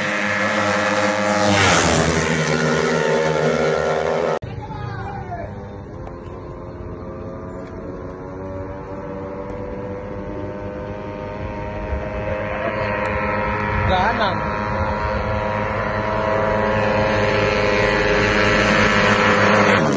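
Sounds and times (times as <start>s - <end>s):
motorcycle engines racing: 0.0s - 19.9s.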